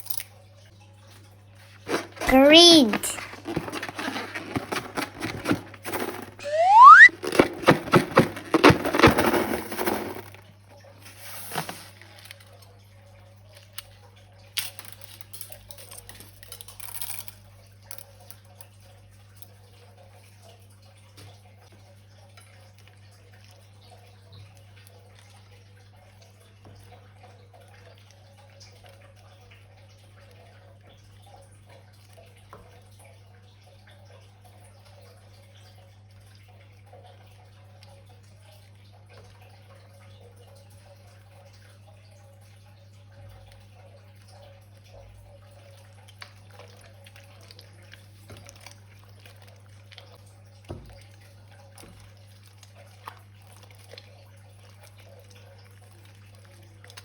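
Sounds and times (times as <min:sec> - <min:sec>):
faint handling sounds: 0:01.6 - 0:02.3, 0:02.9 - 0:10.4, 0:11.0 - 0:12.5
wet slime squelching: 0:01.8 - 0:10.3, 0:45.7 - 0:50.2, 0:51.8 - 0:57.0
rising squeak: 0:06.4 - 0:07.1.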